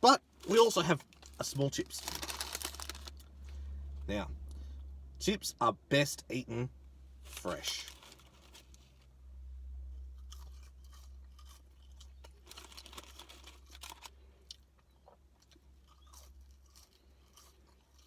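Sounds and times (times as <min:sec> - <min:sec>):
steady low hum: 0:00.0 - 0:18.0
chewing and crunching fries: 0:00.2 - 0:03.6, 0:07.2 - 0:09.1, 0:09.9 - 0:18.0.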